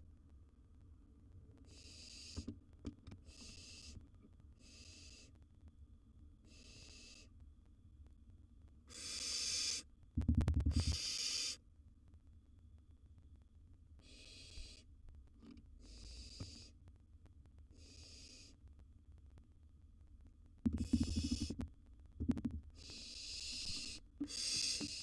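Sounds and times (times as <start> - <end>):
owl nestlings hissing: 1.7 - 2.5, 3.2 - 4.0, 4.6 - 5.3, 6.5 - 7.3, 8.9 - 9.9, 10.7 - 11.6, 14.0 - 14.9, 15.8 - 16.7, 17.8 - 18.6, 20.8 - 21.6, 22.8 - 25.0.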